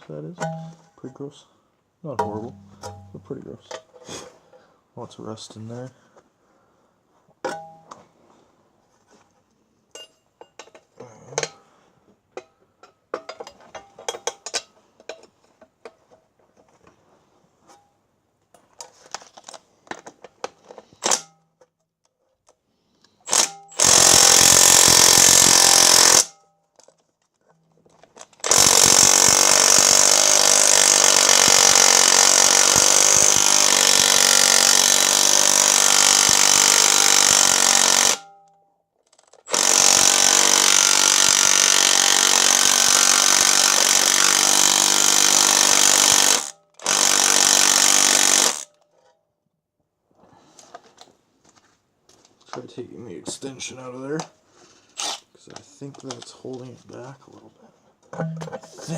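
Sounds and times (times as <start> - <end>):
tools clicking and knocking: 9.9 - 11.6, 12.3 - 16.9, 38.0 - 39.6, 58.0 - 58.9
cordless impact wrench hammering: 23.3 - 26.4, 28.4 - 38.4, 39.5 - 48.7.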